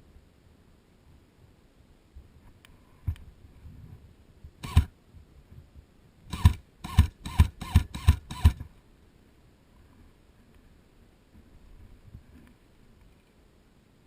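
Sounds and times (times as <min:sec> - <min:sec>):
airsoft gun shots: 0:04.6 - 0:04.9, 0:06.3 - 0:08.6.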